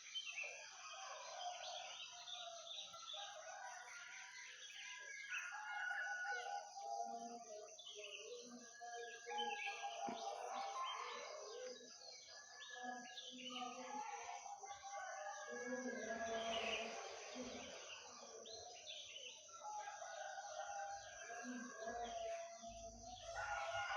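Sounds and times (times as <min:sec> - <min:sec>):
rooster crowing: 0:19.6 - 0:23.9.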